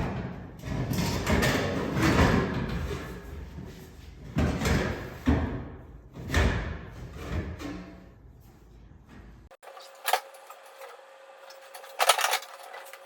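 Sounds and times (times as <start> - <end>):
metal parts clunking: 9.6 - 13.0.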